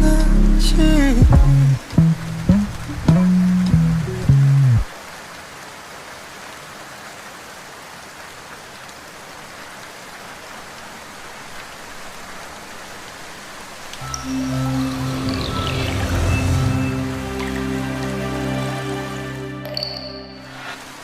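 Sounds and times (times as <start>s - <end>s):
music: 0.0s - 4.8s, 14.0s - 21.0s
steady rain falling: 0.0s - 19.8s.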